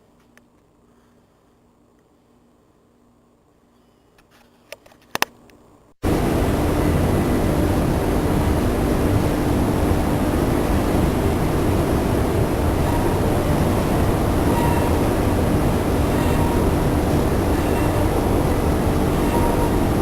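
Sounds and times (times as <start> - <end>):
loud rushing noise: 6.0 - 20.0.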